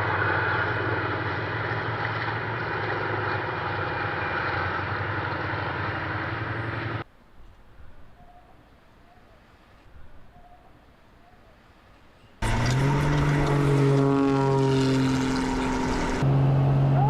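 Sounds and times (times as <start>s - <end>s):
engine drone: 0.0s - 7.0s, 12.4s - 17.0s.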